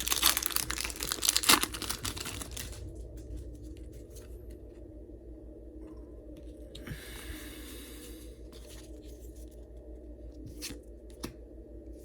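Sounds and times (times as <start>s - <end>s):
foil wrapper tearing and crinkling: 0.0s - 2.8s.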